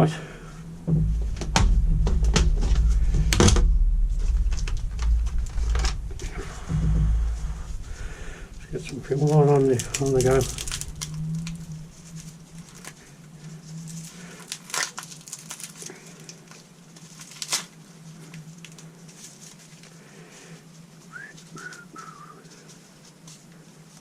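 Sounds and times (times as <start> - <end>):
steady low hum: 0.0 - 15.2.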